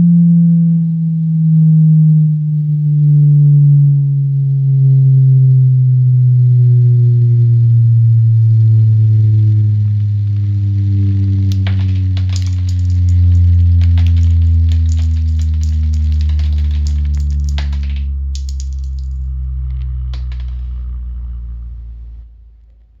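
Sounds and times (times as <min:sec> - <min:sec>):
low bass test tone: 0:00.0 - 0:22.6
salt crystals rattling: 0:11.5 - 0:20.7.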